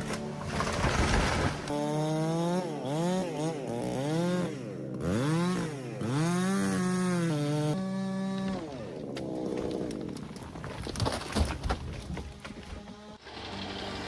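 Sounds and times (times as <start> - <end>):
chainsaw engine revving: 0.6 - 10.1.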